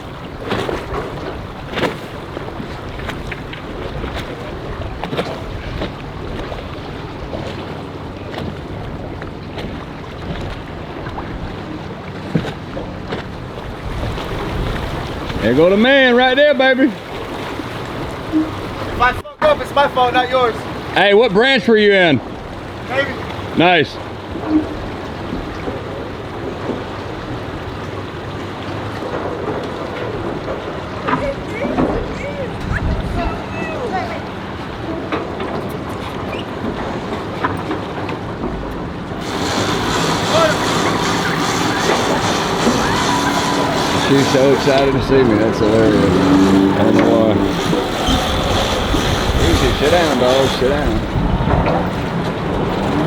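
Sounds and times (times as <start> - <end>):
boat engine running: 0.0 - 53.0
water wash: 0.0 - 53.0
wind on microphone: 31.2 - 34.6, 42.6 - 53.0
sharp knocks: 39.2 - 51.8.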